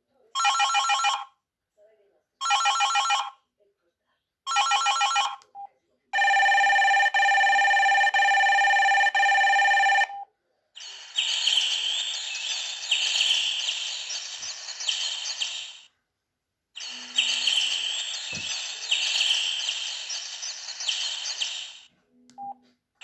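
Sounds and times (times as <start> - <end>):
phone buzzing tone: 6.2 - 10.2
recorded bird chirping: 6.2 - 16.0, 16.8 - 22.5.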